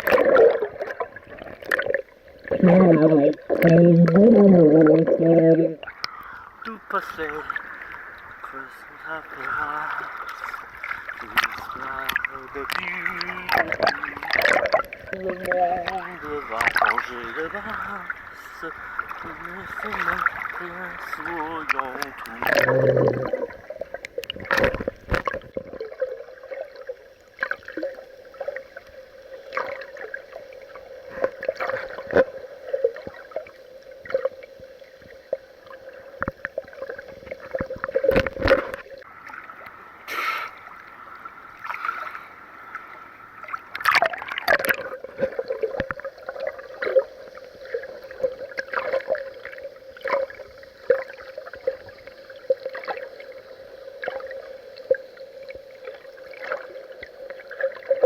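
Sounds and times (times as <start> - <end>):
muffled water splashing: 0.0 - 58.0
steady hum: 2.2 - 25.4.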